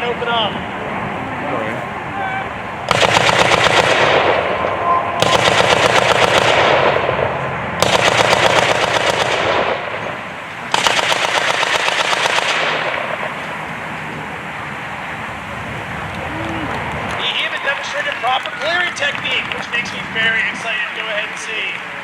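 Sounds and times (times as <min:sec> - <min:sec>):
machine gun firing bursts: 0:02.9 - 0:04.4, 0:05.2 - 0:07.1, 0:07.8 - 0:09.9, 0:10.7 - 0:13.3.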